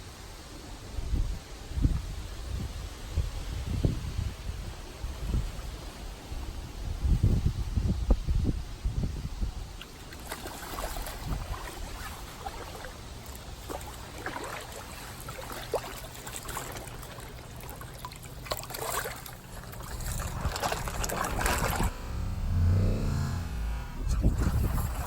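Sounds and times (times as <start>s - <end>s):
small splashes: 9.8s - 21.9s
pond water sloshing: 9.8s - 25.0s
low rumble: 19.8s - 25.0s.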